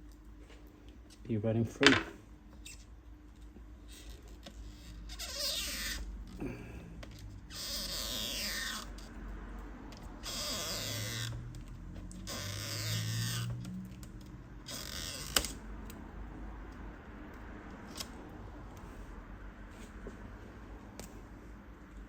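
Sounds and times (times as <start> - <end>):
adhesive tape peeling: 7.1 - 9.2, 9.9 - 16.0, 17.8 - 18.2.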